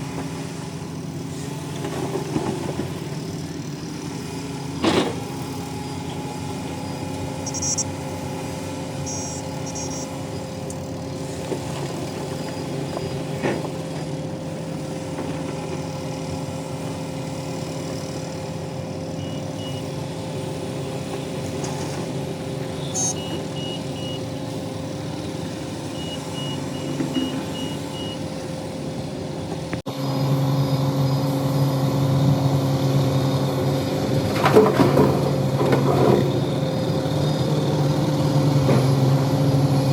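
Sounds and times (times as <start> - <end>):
heavy diesel engine running: 0.0 - 39.9
high-pitched beeps: 7.4 - 7.9, 9.0 - 10.1, 22.8 - 24.2.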